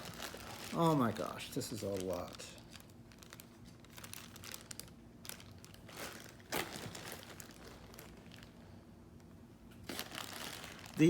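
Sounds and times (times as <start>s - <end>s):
packaging crinkling and rustling: 0.0s - 11.0s.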